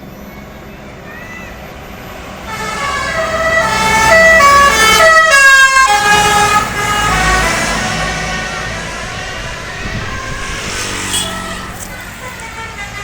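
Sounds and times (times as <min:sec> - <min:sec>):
low rumble of passing bus: 0:00.0 - 0:13.0
bus horn playing a melody: 0:02.4 - 0:13.0.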